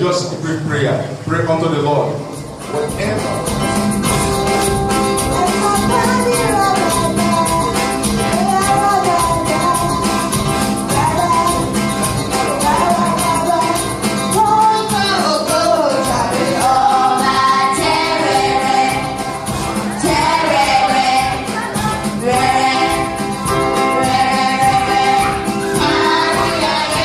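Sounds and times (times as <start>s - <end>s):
worship music with steady beat: 2.2s - 27.0s
person singing a melody: 5.3s - 19.2s.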